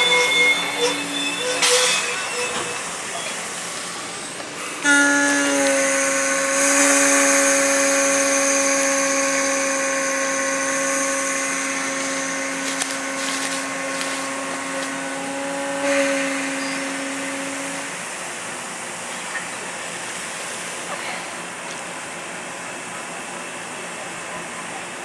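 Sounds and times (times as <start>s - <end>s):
steam whistle blowing: 0.0s - 3.5s, 4.6s - 18.1s
steam hiss: 0.0s - 22.3s.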